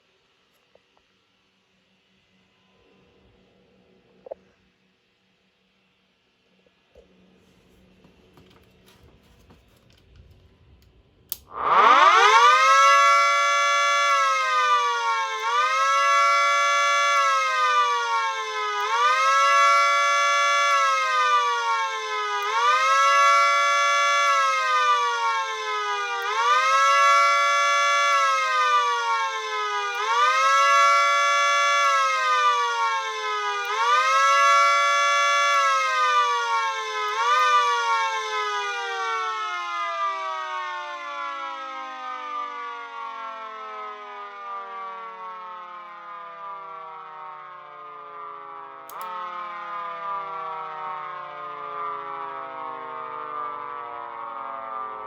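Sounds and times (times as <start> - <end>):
siren wailing: 11.3 - 55.0.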